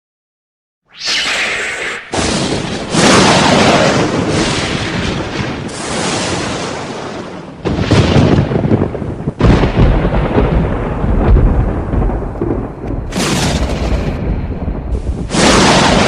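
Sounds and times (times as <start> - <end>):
hissing burst: 0.9 - 5.0
thunder crashing and rumbling: 1.4 - 16.0.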